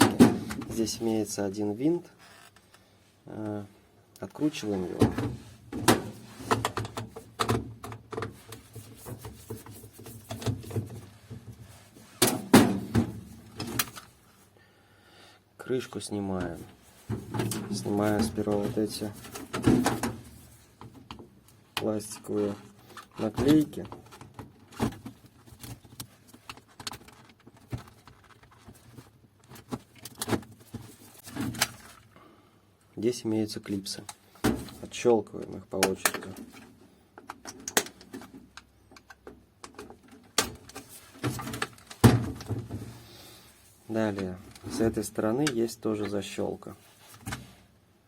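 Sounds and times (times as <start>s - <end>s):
plastic clicks and rustling: 22.9s - 32.1s, 35.4s - 42.6s.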